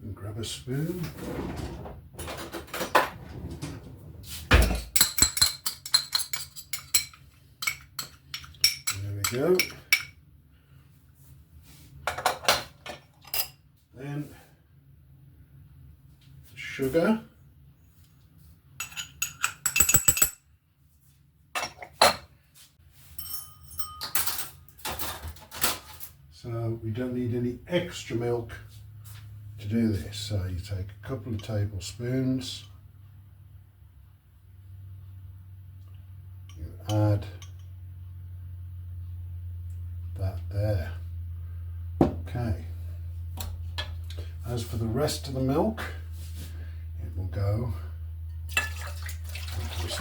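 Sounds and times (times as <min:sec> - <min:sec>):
scraping rustle: 0:00.9 - 0:04.9
spoon clinking against a bowl: 0:05.0 - 0:10.2, 0:18.8 - 0:20.4, 0:23.2 - 0:24.3.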